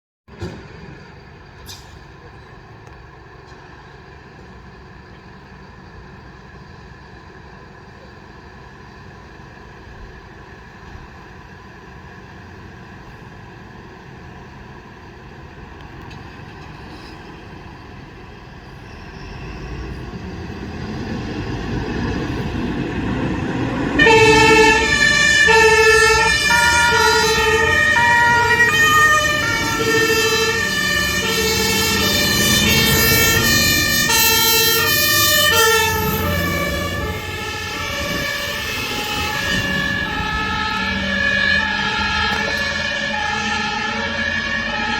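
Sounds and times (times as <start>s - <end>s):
fire engine rumble: 0.3s - 44.9s
two-tone siren: 21.7s - 44.9s.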